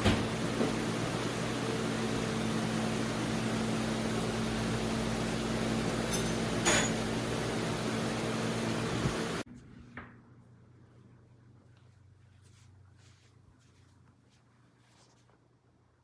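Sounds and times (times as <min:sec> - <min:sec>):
machine hum with hiss: 0:00.0 - 0:09.4.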